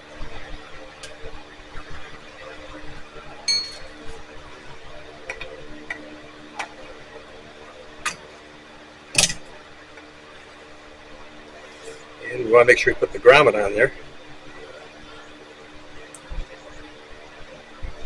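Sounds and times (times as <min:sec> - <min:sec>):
faint steady hum: 0:00.0 - 0:18.0
ringing metallic clink: 0:03.5 - 0:03.9
tools clicking and tapping: 0:03.5 - 0:03.9.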